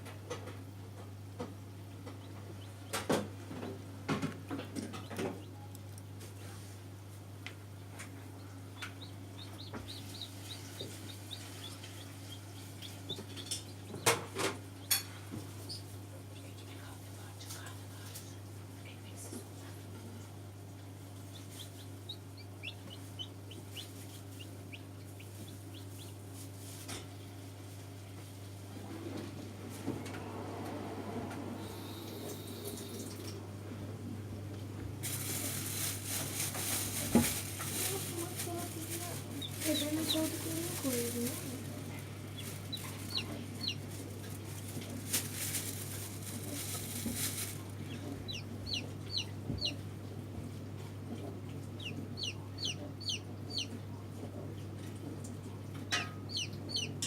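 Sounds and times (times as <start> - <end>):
steady low hum: 0.0 - 57.0
chicks peeping: 1.4 - 3.8, 4.5 - 6.3, 8.0 - 17.0, 18.7 - 19.3, 20.7 - 26.9, 35.2 - 49.9, 51.1 - 54.8, 55.5 - 57.0.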